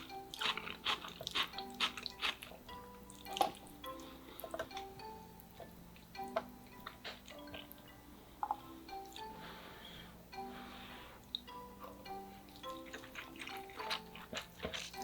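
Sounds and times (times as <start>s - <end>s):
crunching and chewing: 0.0s - 3.7s, 12.6s - 15.0s
soft background music: 0.0s - 15.0s.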